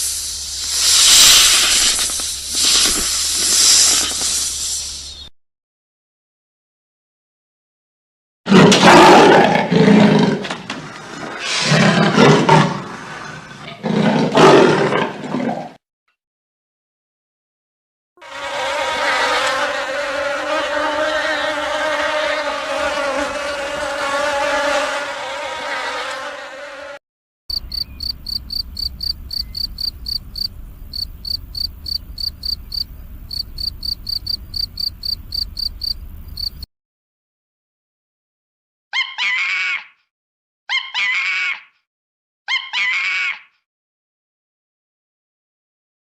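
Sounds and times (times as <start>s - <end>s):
flying insect buzzing: 0.0s - 5.1s, 18.2s - 36.7s
cricket chirping: 27.5s - 36.7s.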